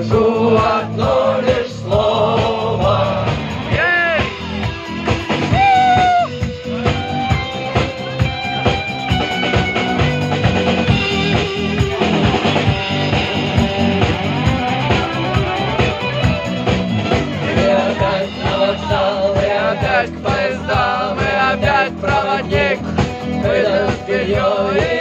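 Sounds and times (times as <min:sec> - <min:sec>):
steady drum beat: 0:00.0 - 0:25.0
electric guitar melodic lines: 0:06.2 - 0:17.5.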